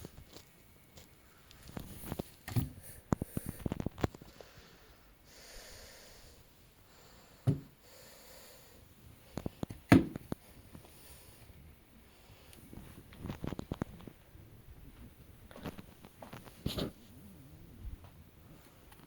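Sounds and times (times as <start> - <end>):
thumps: 7.4 - 7.8.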